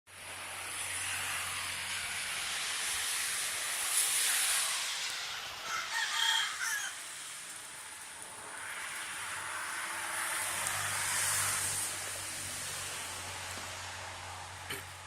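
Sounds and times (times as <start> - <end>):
steady rushing noise: 0.1 - 15.0
rooster crowing: 5.6 - 7.1.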